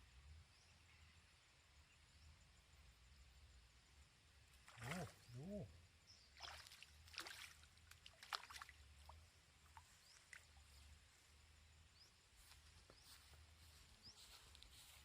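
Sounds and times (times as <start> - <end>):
water splashes: 4.6 - 5.5, 6.3 - 10.8.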